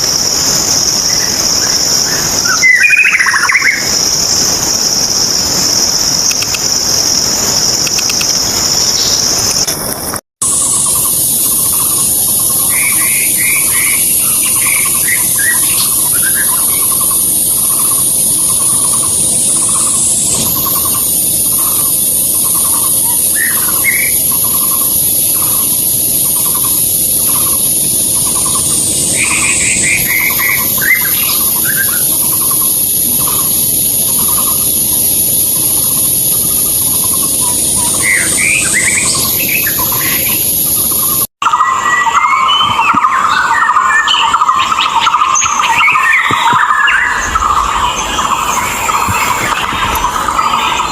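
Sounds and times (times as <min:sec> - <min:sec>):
high insect drone: 0:00.0 - 0:50.9
bird singing quick varied notes: 0:10.4 - 0:50.9.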